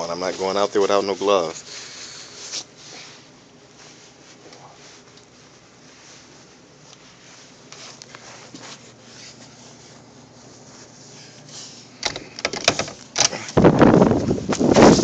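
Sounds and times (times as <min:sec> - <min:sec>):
faint rustling and handling: 0:00.0 - 0:12.0
door clacking open: 0:12.0 - 0:13.4.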